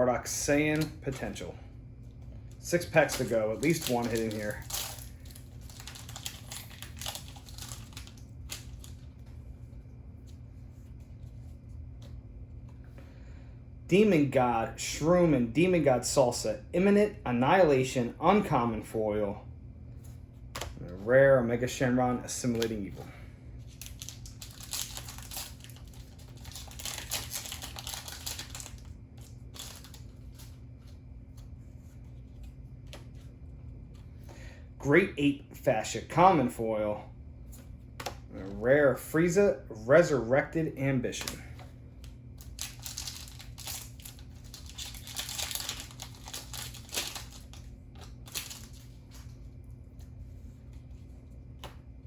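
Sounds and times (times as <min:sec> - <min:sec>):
steady low hum: 0:00.0 - 0:52.0
foil wrapper crinkling and tearing: 0:02.8 - 0:09.1, 0:23.7 - 0:30.6, 0:42.4 - 0:49.4.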